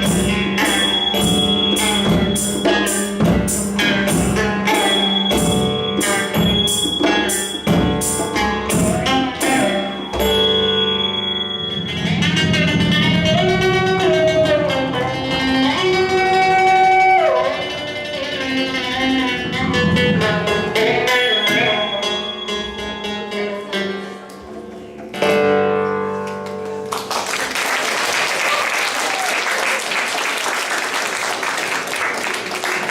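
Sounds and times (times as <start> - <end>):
hand drums playing: 0.0 - 10.7
plucked string instrument: 0.0 - 27.0.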